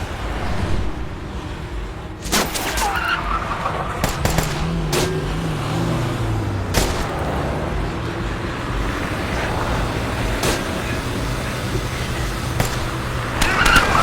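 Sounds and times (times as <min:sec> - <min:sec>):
vehicle engine running: 0:00.0 - 0:14.0
sharp gunshots: 0:02.2 - 0:05.4, 0:06.7 - 0:07.4, 0:12.3 - 0:14.0.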